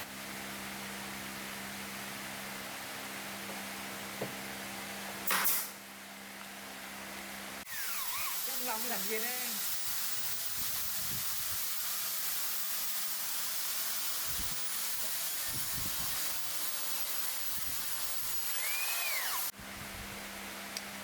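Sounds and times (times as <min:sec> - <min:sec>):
paint spray gun hissing: 0:07.7 - 0:14.7.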